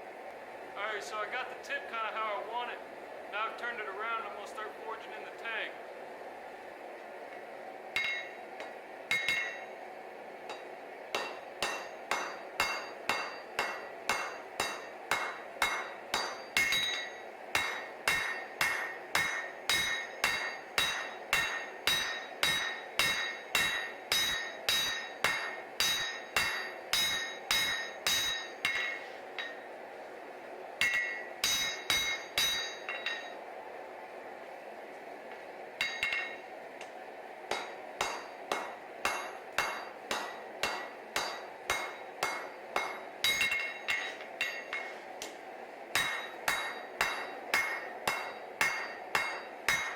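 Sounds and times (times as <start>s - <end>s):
hammer striking steel on anvil: 7.9s - 9.8s, 10.4s - 29.7s, 30.8s - 33.4s, 35.8s - 36.5s, 37.5s - 49.9s.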